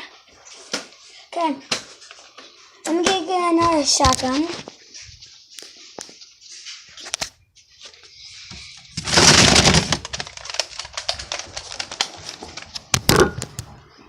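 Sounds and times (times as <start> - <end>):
plastic toys clattering: 8.5 - 13.7.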